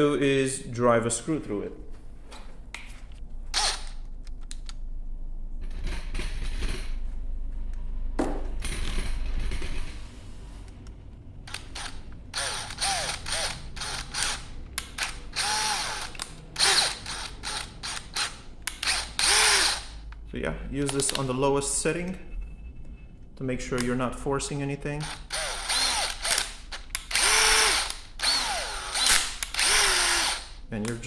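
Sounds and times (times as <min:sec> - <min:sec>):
power drill driving a screw: 0:03.5 - 0:04.0, 0:11.5 - 0:20.1, 0:25.0 - 0:30.6.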